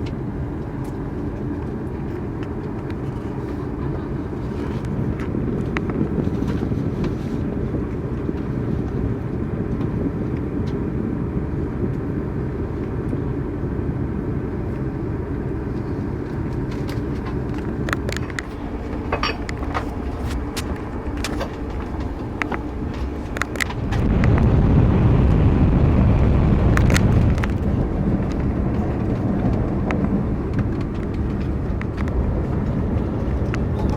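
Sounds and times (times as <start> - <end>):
train rumbling: 0.0 - 33.9
light clicks and rattles: 15.7 - 24.1.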